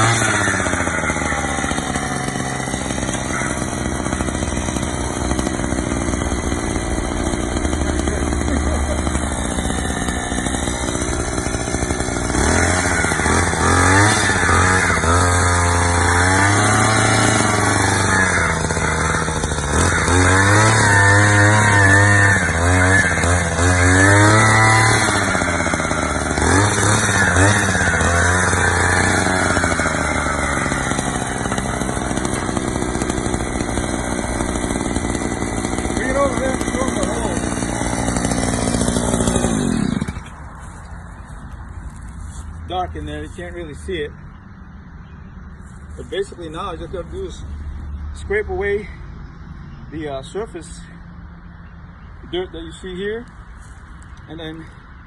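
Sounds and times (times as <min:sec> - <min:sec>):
post-hole auger engine running: 0:00.0 - 0:44.4, 0:45.6 - 0:49.0.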